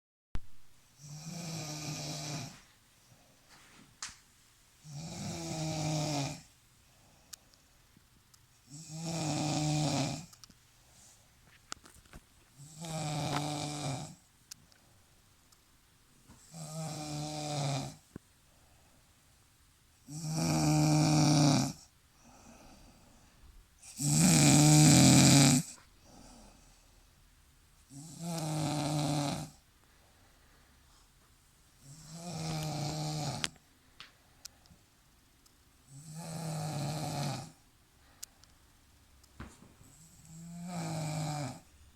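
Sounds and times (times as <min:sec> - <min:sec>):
quiet breathing: 0:00.9 - 0:04.0, 0:04.8 - 0:15.4, 0:16.2 - 0:35.1, 0:35.8 - 0:38.8
heavy rasping snoring: 0:01.0 - 0:02.6, 0:04.8 - 0:06.5, 0:08.7 - 0:10.3, 0:12.6 - 0:14.2, 0:16.5 - 0:18.0, 0:20.1 - 0:22.8, 0:23.8 - 0:26.5, 0:27.9 - 0:29.6, 0:31.8 - 0:33.6, 0:35.9 - 0:37.6, 0:40.0 - 0:41.7
faint out-breath: 0:29.8 - 0:31.1.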